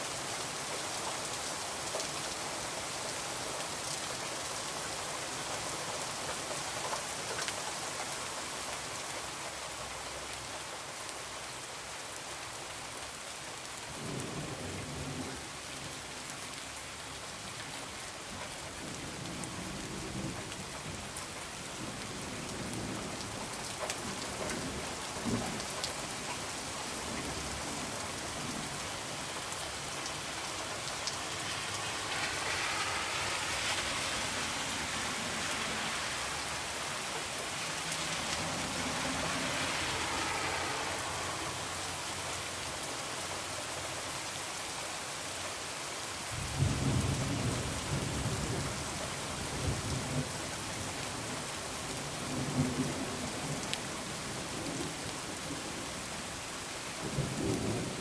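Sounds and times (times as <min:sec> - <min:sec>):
heavy rain: 0:00.0 - 0:58.0
thunder rumbling: 0:37.4 - 0:42.6, 0:46.4 - 0:48.9.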